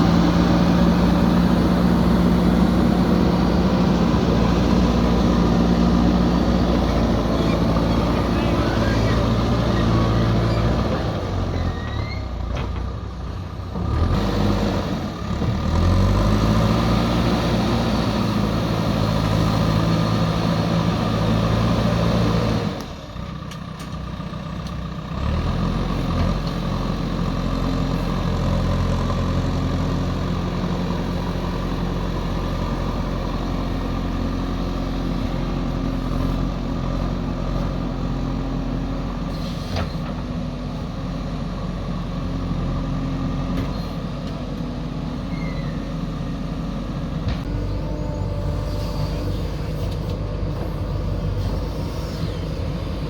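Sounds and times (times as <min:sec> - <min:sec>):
heavy machinery diesel engine: 0:00.0 - 0:53.0.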